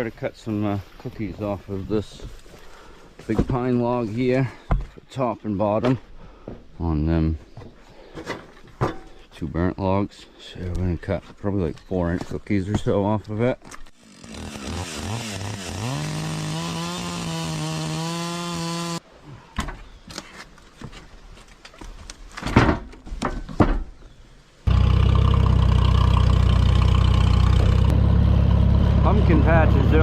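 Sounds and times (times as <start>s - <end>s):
chainsaw cutting log: 13.9s - 19.0s
low-pitched engine running: 24.7s - 30.0s.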